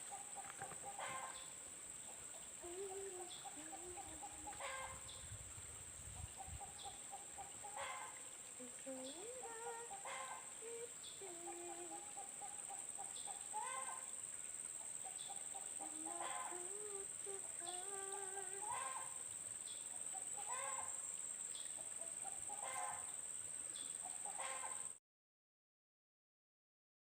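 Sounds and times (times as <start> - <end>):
chickens clucking: 0.0 - 1.5, 2.1 - 5.2, 6.3 - 8.2, 9.0 - 14.1, 15.1 - 19.0, 20.2 - 20.8, 22.2 - 23.1.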